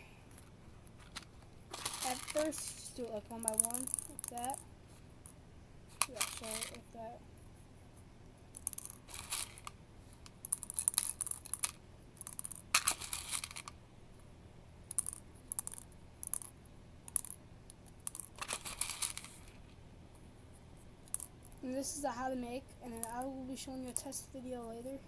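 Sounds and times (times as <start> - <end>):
plastic pellets rattling in ball: 1.0 - 4.6, 6.0 - 6.8, 8.6 - 9.7, 10.3 - 13.8, 18.0 - 19.5.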